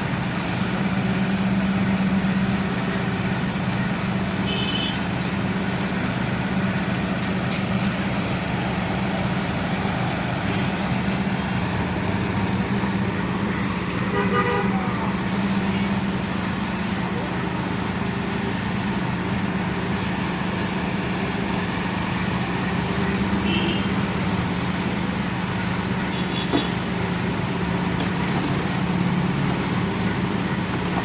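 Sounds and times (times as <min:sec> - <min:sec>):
heavy engine humming: 0:00.0 - 0:31.0
horn toots: 0:14.0 - 0:15.0.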